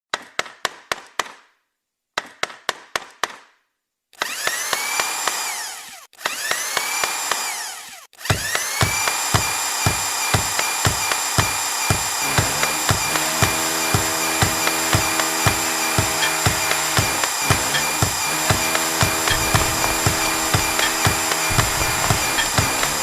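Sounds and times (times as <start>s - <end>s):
electric drill whining: 4.2s - 23.0s
hammer driving nails: 8.2s - 23.0s
heavy regular thumps: 16.0s - 23.0s.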